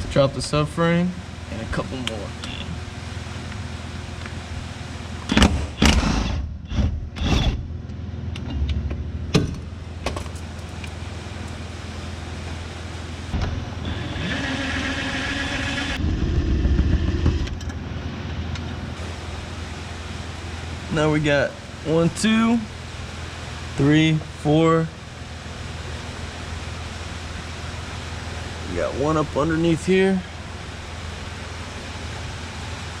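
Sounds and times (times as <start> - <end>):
power tool motor running: 5.3 - 7.7, 13.8 - 17.5.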